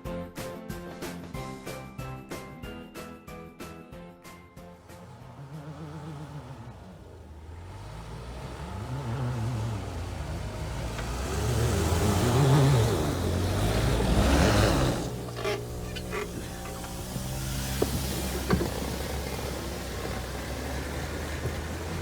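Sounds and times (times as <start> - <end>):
off-road vehicle engine revving: 4.6 - 22.0
tyres churning through snow: 4.6 - 22.0.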